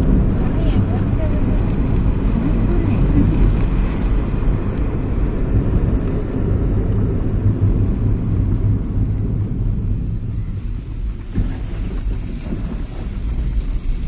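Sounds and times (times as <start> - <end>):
vehicle interior rumble: 0.0 - 14.0.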